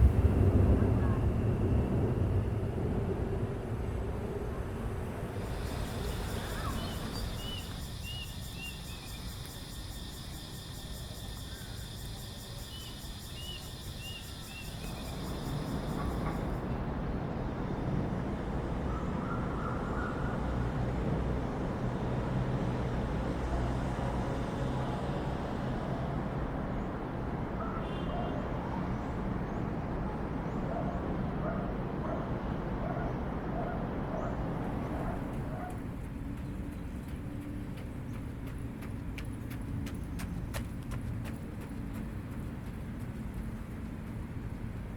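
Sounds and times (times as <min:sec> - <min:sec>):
pulsing insect drone: 0:00.0 - 0:16.6
distant city rumble: 0:00.0 - 0:44.9
bird chirping: 0:06.2 - 0:09.2.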